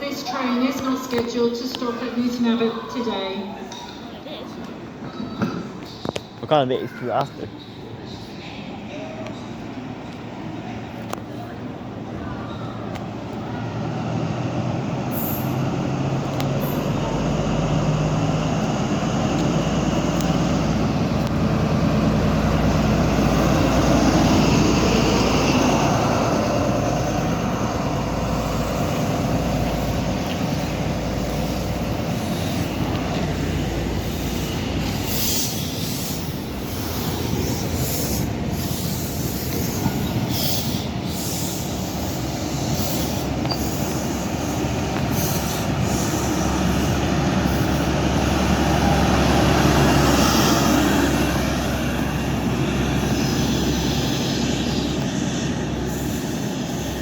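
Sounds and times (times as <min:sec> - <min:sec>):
diesel train engine humming: 0:00.0 - 0:05.1, 0:05.8 - 0:57.0
train wheel squeal: 0:15.1 - 0:15.8, 0:29.7 - 0:47.9.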